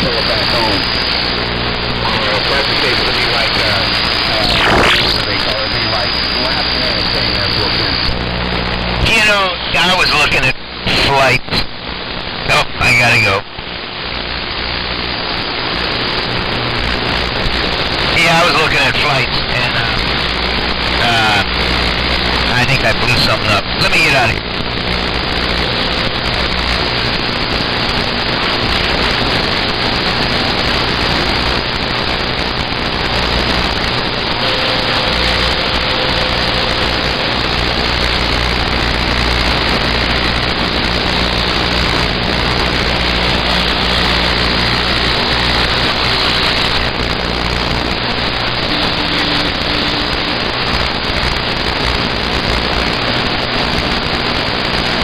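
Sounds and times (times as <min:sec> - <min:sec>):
low engine drone: 0:00.0 - 0:10.9, 0:24.4 - 0:54.8.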